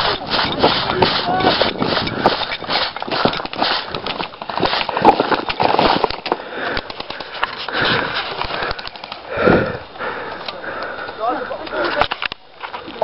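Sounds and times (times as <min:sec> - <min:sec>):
crackles and clicks: 0:00.0 - 0:09.4
rustling and scraping at microphone: 0:00.0 - 0:09.8
heavy breathing: 0:00.0 - 0:12.2.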